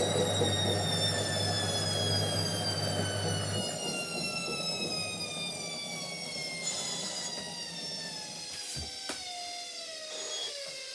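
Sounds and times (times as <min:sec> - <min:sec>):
washing machine drum spinning down: 0:00.0 - 0:06.4.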